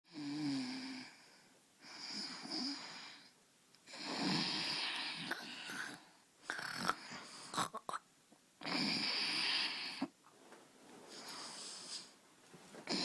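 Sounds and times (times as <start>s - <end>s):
person snoring: 3.9s - 8.0s.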